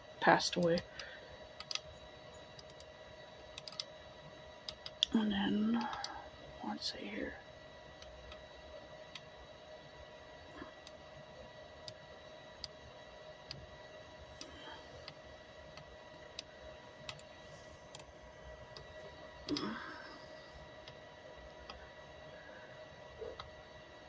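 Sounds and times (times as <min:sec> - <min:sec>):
faint electrical hum: 0:00.0 - 0:24.0.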